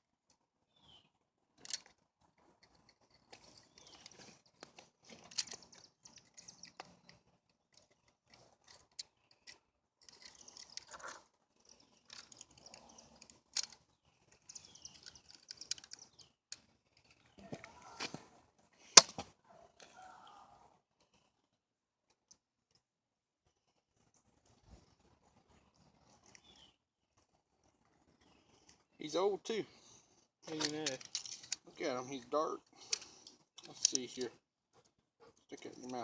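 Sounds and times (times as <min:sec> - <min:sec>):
handling clicks taps and rustles: 0:01.6 - 0:18.3, 0:19.0 - 0:19.9, 0:30.4 - 0:36.0.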